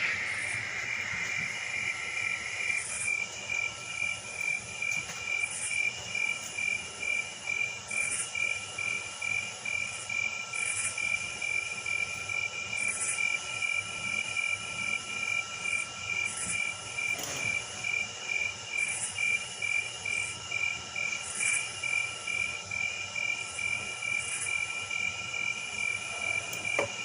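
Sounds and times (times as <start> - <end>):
crickets chirping: 0.0 - 27.0.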